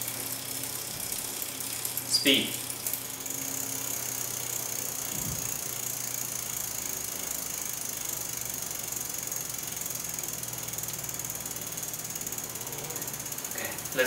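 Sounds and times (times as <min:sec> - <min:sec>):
bicycle hub ratcheting buzz: 0:00.0 - 0:14.0.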